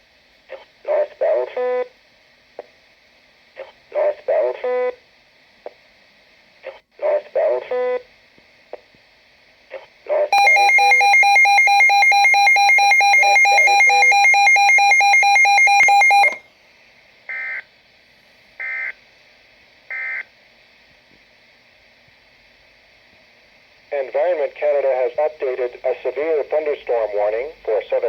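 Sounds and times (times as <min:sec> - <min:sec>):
electronic alarm tone: 0:10.4 - 0:16.4
short bursts of data tones: 0:10.4 - 0:16.4.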